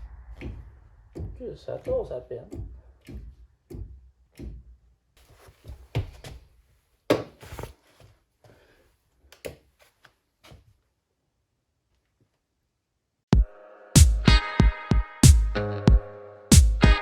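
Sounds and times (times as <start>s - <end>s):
clunks and knocks: 0.2s - 4.8s.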